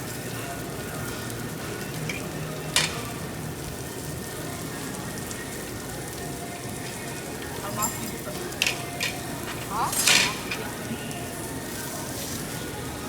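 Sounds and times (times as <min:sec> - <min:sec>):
food sizzling on a grill: 0:00.0 - 0:13.0.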